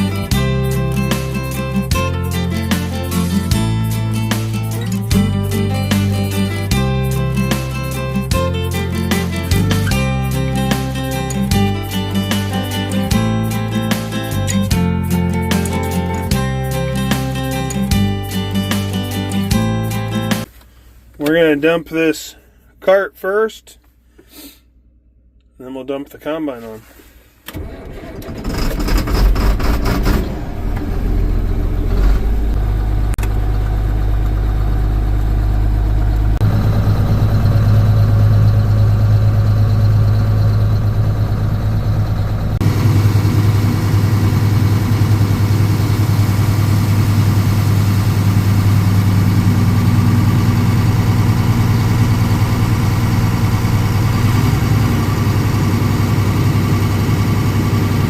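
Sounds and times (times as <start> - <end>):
tractor diesel engine running: 0.0 - 23.0, 27.5 - 58.0.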